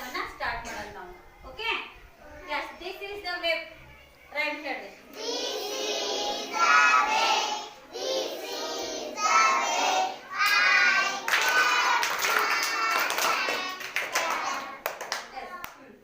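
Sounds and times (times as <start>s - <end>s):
children singing: 5.1s - 14.9s
hand claps: 11.3s - 15.8s.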